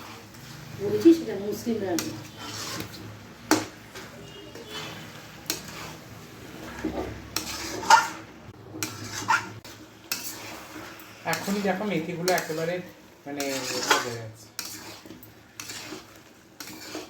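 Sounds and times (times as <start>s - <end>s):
utensil scraping a pan: 0.0s - 17.0s.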